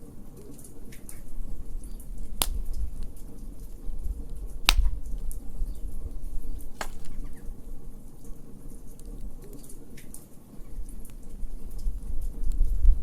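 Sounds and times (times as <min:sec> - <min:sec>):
wood fire crackling: 0:01.2 - 0:09.6
fire sharp pops: 0:02.1 - 0:05.6, 0:06.5 - 0:07.6.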